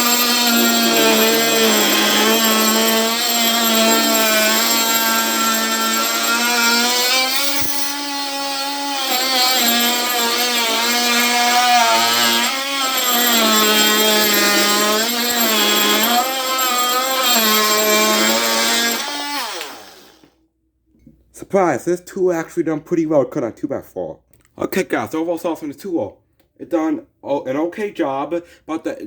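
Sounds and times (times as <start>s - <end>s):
oscillating multi-tool cutting wood: 0.0s - 20.3s.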